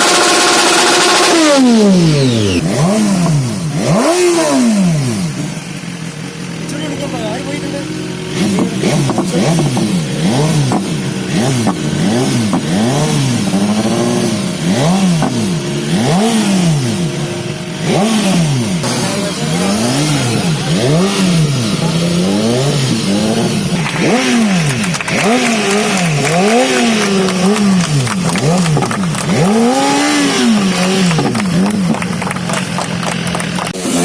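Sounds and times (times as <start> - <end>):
engines revving in throttle blips: 0.0 - 34.0.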